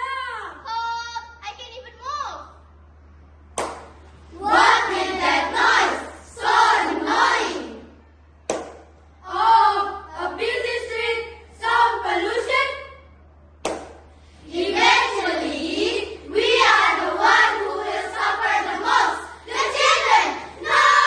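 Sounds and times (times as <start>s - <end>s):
children chanting in unison: 4.3s - 8.0s, 9.2s - 13.0s, 14.4s - 21.0s.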